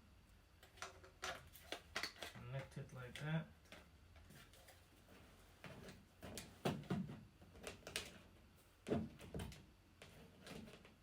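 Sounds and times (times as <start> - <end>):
plastic parts knocking and clicking: 0.6 - 2.4, 5.6 - 8.2.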